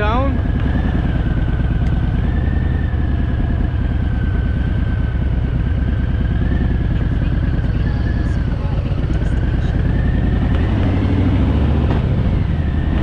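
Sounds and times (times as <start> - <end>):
motorcycle engine throbbing: 0.0 - 13.0.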